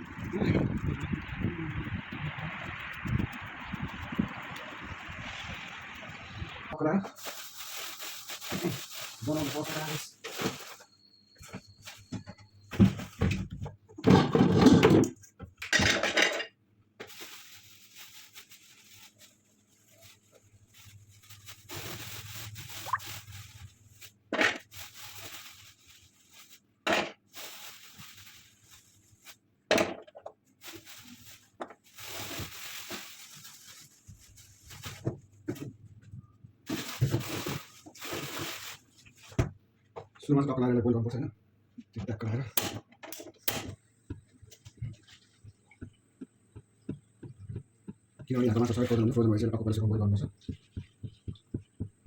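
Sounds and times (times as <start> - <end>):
pots and dishes clattering: 14.0 - 16.5.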